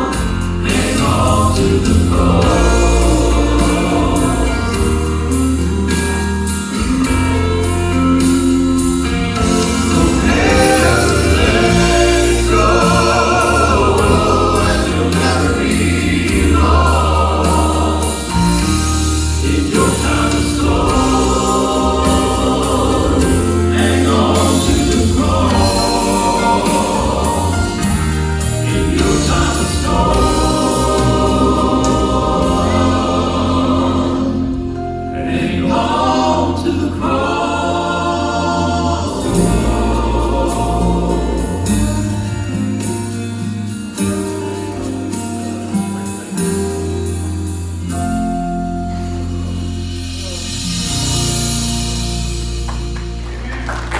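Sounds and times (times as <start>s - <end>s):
vocal quartet singing in harmony: 0.0s - 52.8s
band backing with strong bass: 0.0s - 53.9s.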